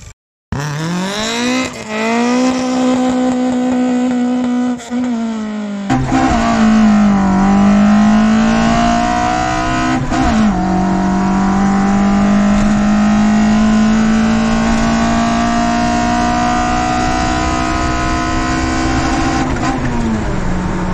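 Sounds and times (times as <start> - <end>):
car engine revving under load: 0.6 - 20.9.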